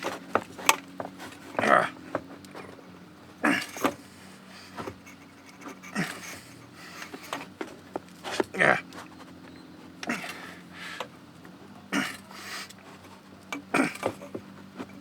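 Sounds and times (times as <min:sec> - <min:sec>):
person's effortful breaths: 0:03.4 - 0:15.0.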